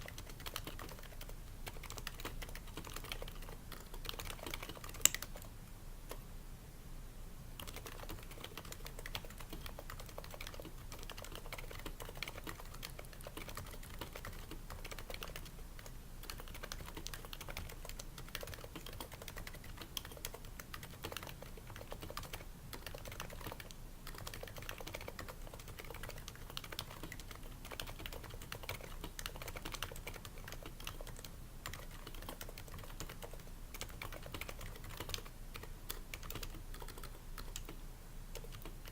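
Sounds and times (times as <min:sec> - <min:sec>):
keyboard typing clicks: 0:00.0 - 0:05.5, 0:07.6 - 0:38.9.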